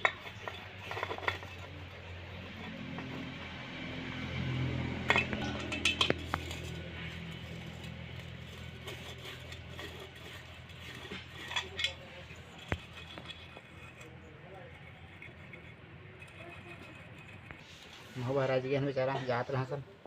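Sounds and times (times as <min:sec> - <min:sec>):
metal parts clinking and knocking: 0:00.0 - 0:03.4, 0:05.0 - 0:14.1.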